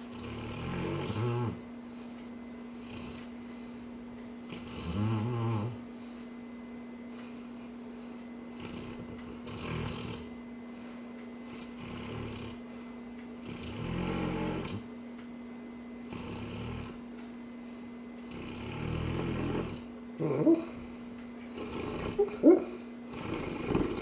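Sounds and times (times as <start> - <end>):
dog snoring: 0.0 - 1.7, 2.8 - 3.3, 4.5 - 5.8, 8.5 - 10.4, 11.4 - 12.7, 13.4 - 14.9, 16.0 - 17.0, 18.2 - 20.8, 21.5 - 24.0
dog whimpering: 20.2 - 20.8, 21.6 - 24.0.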